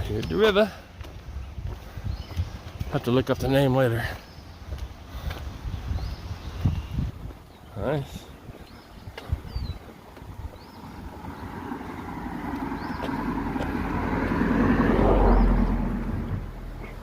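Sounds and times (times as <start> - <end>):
bird chirping: 0.0 - 14.3
vehicle passing by: 10.6 - 17.0.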